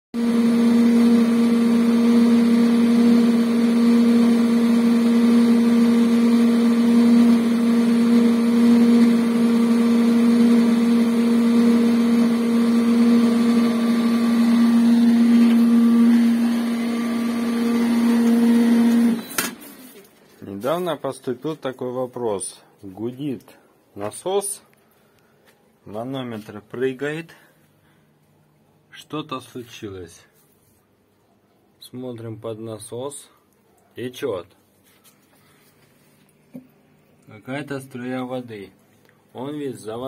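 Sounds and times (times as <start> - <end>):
pool pump humming: 0.2 - 20.3.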